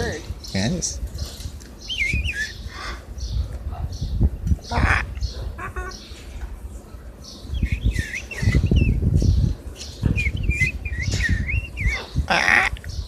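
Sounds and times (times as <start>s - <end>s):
parrots chattering: 4.6s - 6.1s, 10.9s - 13.0s
parrot harsh squawk: 4.7s - 6.0s, 12.3s - 12.8s.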